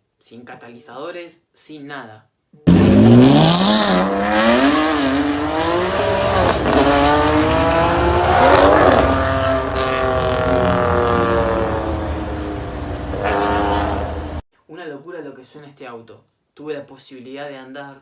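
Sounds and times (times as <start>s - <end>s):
exhaust cracks: 2.6s - 14.4s
car engine accelerating hard: 2.7s - 14.4s.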